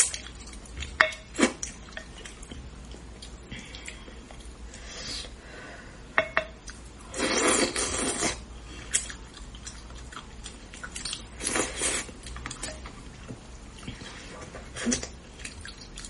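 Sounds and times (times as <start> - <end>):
tableware clinking: 6.2 - 6.6
wet chewing and slurping: 7.1 - 12.8, 13.8 - 16.0.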